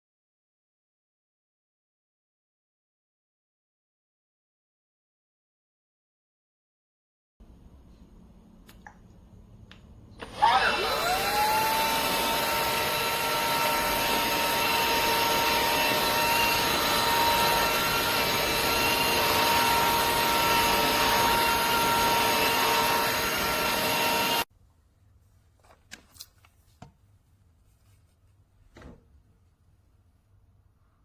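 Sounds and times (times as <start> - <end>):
vacuum cleaner motor whining: 10.2 - 24.5.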